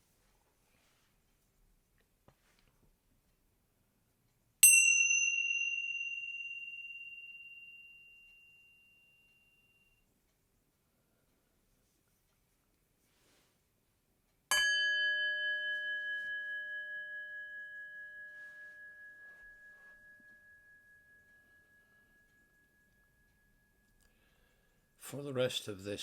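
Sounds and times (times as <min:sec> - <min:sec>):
meditation bell ringing: 0:04.6 - 0:10.0, 0:14.5 - 0:25.2.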